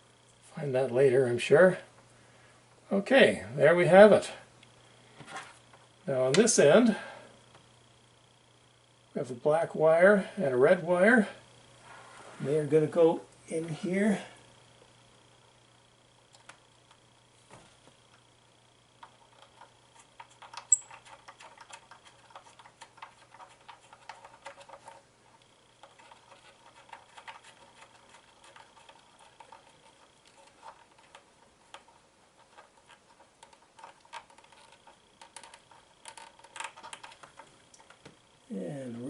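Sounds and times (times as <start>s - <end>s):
faint steady hum: 0.0s - 39.0s
wires clicking into terminals: 16.3s - 17.0s, 19.0s - 38.2s.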